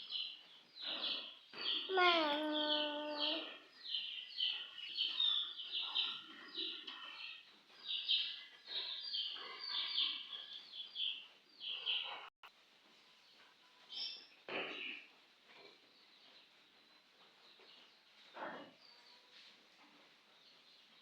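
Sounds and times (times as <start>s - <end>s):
small birds chirping: 0.0s - 12.3s.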